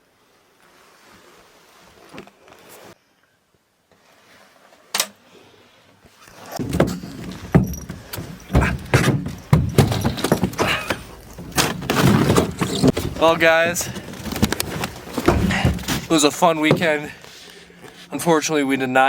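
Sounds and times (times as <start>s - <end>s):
knocks and clatter: 6.6s - 17.2s.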